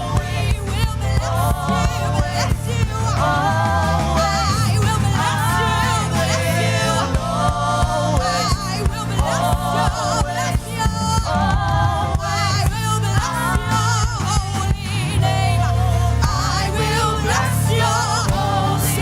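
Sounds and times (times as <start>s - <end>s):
drum beat: 0.0s - 15.0s, 17.3s - 19.0s
bass line: 0.0s - 19.0s
people singing gospel song: 0.0s - 19.0s.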